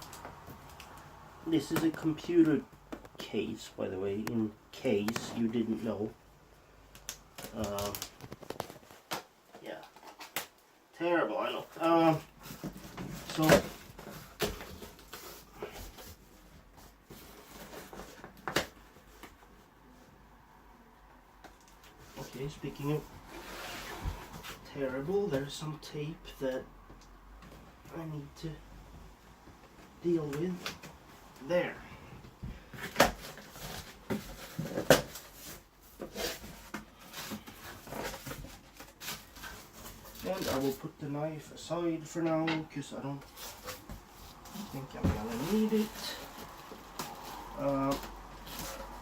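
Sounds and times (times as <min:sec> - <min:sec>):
cardboard packaging rustling: 0:07.0 - 0:10.6, 0:11.5 - 0:19.6, 0:32.6 - 0:41.0, 0:43.2 - 0:49.0.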